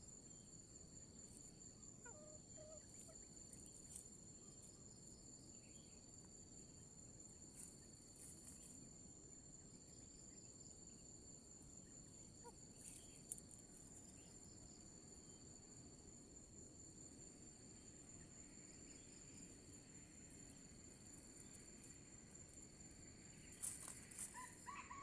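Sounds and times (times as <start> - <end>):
insect chorus: 0.0 - 25.0
soft ticks and rustles: 3.0 - 4.7, 7.4 - 9.0, 12.8 - 14.1, 23.4 - 24.6.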